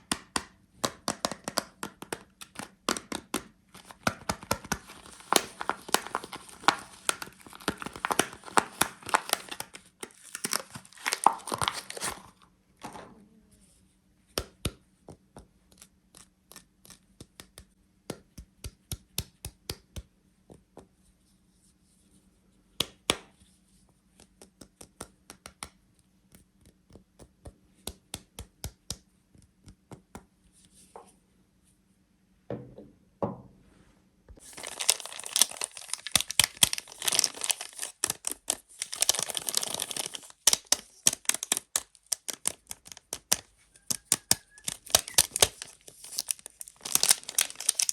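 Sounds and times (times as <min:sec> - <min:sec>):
wrapper tearing and crinkling: 0:03.8 - 0:12.4, 0:34.4 - 0:47.9.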